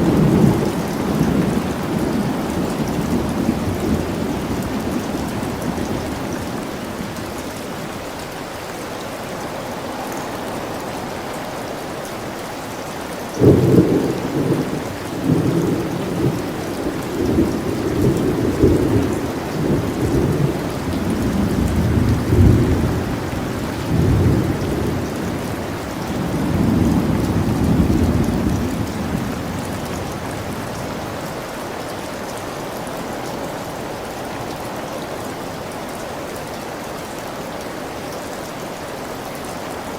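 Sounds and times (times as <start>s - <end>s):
steady rain: 0.0s - 39.9s
thunder rumbling: 13.4s - 31.2s.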